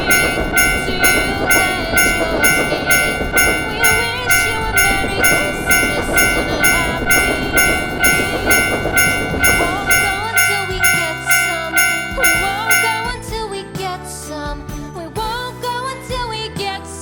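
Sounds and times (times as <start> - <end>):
level-crossing warning bell: 0.0 - 13.3.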